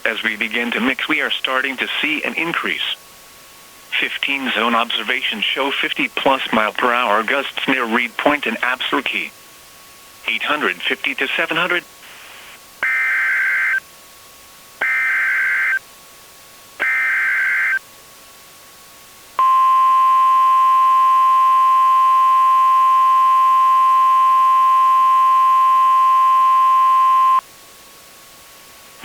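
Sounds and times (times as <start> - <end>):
steady warning alarm tone: 12.8 - 13.8, 14.8 - 15.8, 16.8 - 17.8, 19.4 - 27.4.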